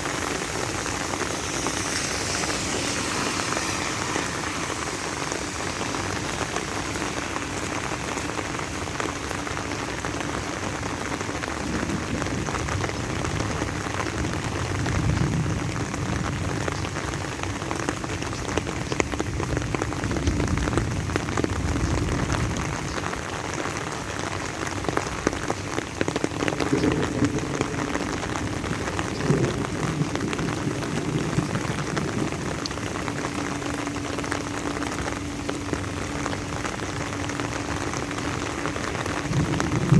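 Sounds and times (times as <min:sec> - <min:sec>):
low rumble: 0:00.0 - 0:09.6
steady rain falling: 0:00.0 - 0:39.9.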